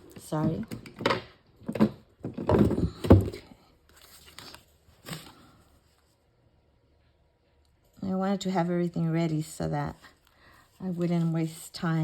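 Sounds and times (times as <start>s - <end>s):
paper rustling: 3.9s - 6.2s.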